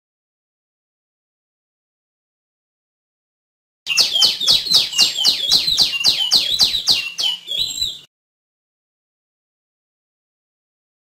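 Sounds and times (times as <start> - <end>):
songbird calling: 3.9 - 8.1.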